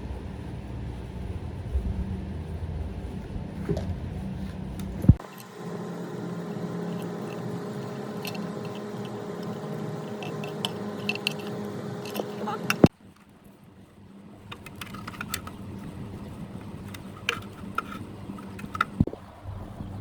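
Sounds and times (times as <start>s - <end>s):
low rumble: 0.0s - 12.9s, 19.0s - 20.0s
small electric motor humming: 0.0s - 12.9s.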